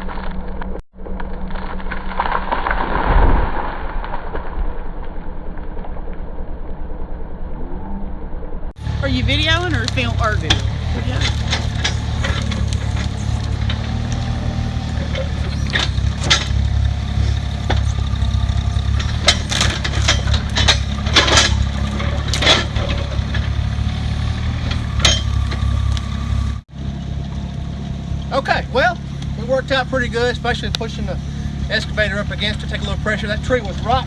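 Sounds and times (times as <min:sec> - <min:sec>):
diesel engine idling: 0:08.8 - 0:34.0
sharp knocks and clicks: 0:09.4 - 0:26.6.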